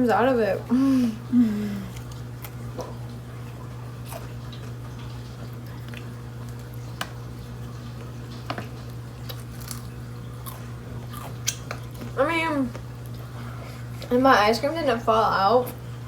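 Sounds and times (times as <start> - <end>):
steady low hum: 0.0 - 16.0
crunchy eating clicks: 8.0 - 13.2.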